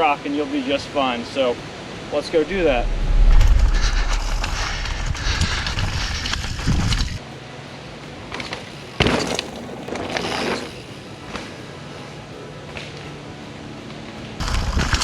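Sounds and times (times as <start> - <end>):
rushing wind: 1.8 - 7.2
bike tyre noise: 2.3 - 7.2.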